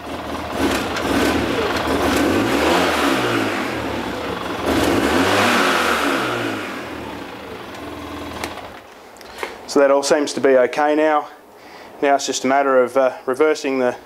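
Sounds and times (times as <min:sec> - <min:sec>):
side-by-side engine revving: 0:00.0 - 0:08.7.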